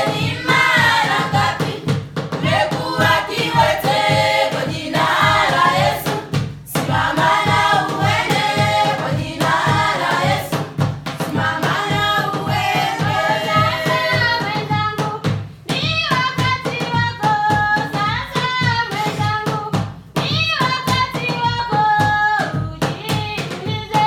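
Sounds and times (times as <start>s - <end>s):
choir singing: 0.0s - 10.6s, 11.3s - 14.3s
steady drum beat: 0.0s - 24.0s.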